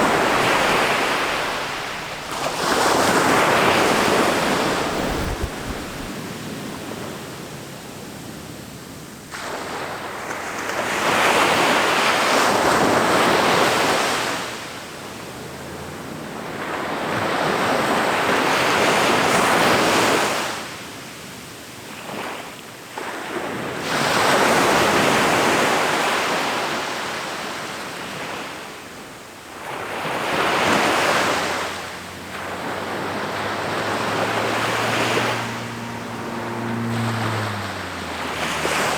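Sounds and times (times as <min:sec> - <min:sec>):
ocean waves breaking on beach: 0:00.0 - 0:07.0, 0:29.6 - 0:38.9.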